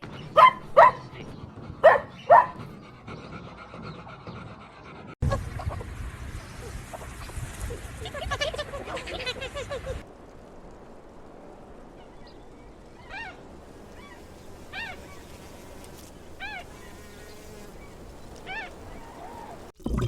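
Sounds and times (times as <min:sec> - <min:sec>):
bird calls rising and falling: 0:11.9 - 0:19.7.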